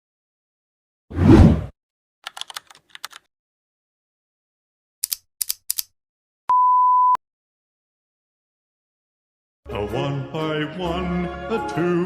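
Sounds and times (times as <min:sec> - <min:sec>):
sharp plastic clicks: 0:05.0 - 0:05.9.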